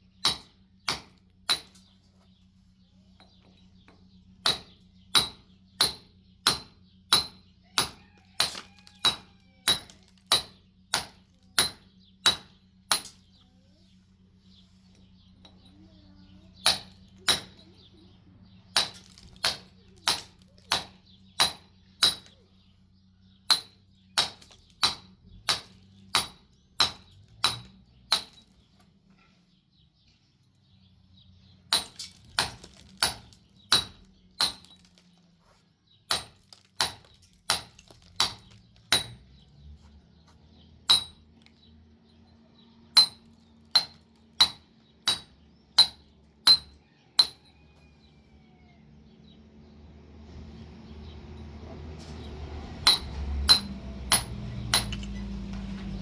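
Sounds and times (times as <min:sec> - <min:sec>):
sharp metallic strikes with clink: 0:00.2 - 0:01.8, 0:04.4 - 0:13.3, 0:16.7 - 0:17.6, 0:18.8 - 0:22.4, 0:23.5 - 0:28.5, 0:31.8 - 0:34.8, 0:36.1 - 0:39.3, 0:40.9 - 0:41.3, 0:43.0 - 0:47.5, 0:52.8 - 0:55.2.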